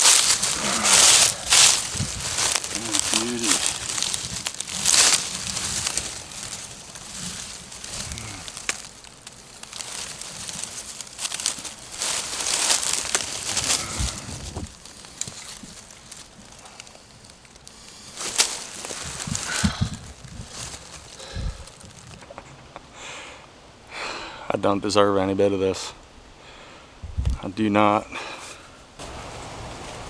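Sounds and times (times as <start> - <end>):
wind gusting: 0.0 - 22.2
dry leaves rustling: 0.0 - 22.4, 29.0 - 30.0.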